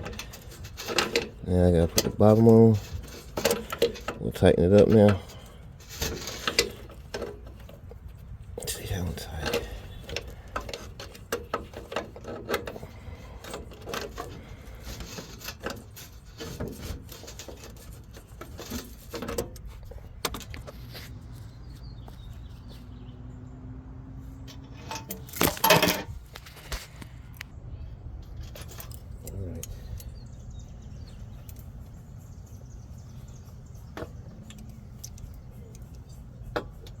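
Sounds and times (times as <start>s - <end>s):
hand tools clinking on metal: 0.0s - 7.4s.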